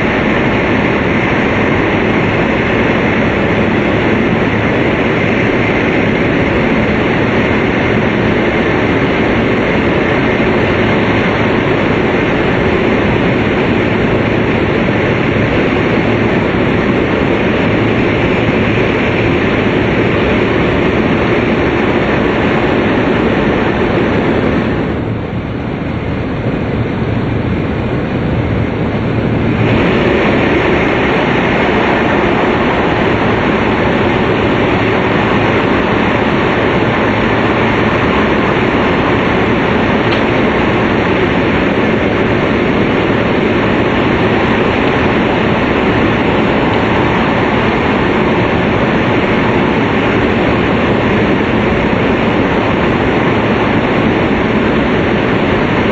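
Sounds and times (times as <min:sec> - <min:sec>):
train rumble inside passenger car: 0:00.0 - 0:55.9.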